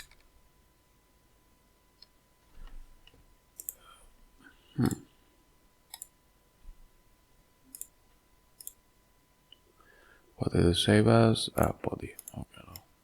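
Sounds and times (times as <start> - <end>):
computer mouse clicking: 3.6 - 3.8, 5.9 - 6.2, 7.7 - 8.0, 8.6 - 8.8.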